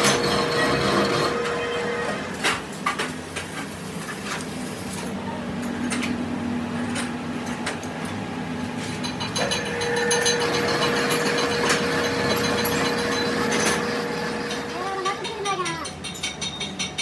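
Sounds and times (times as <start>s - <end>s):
machine hum: 4.7s - 15.1s.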